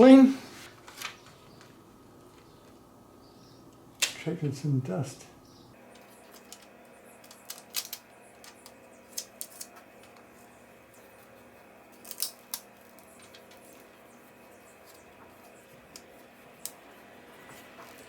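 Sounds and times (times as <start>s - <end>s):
faint steady hum: 0.0s - 18.0s
plastic film clicking and crinkling: 5.9s - 10.3s, 11.9s - 14.0s.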